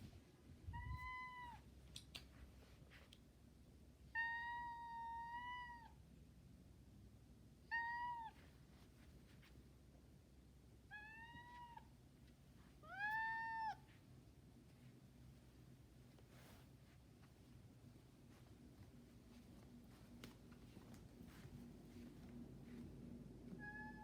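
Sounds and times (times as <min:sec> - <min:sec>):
cat meowing: 0:00.7 - 0:01.6, 0:04.2 - 0:06.0, 0:07.7 - 0:08.4, 0:10.9 - 0:11.9, 0:12.8 - 0:13.9, 0:23.5 - 0:24.0.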